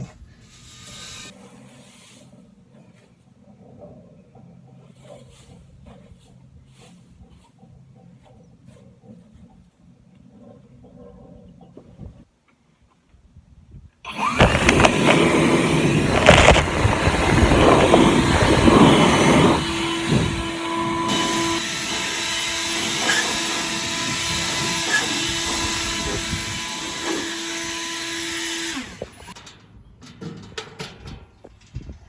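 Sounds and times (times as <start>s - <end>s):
blower blasting air: 0.0s - 2.3s, 14.1s - 29.4s.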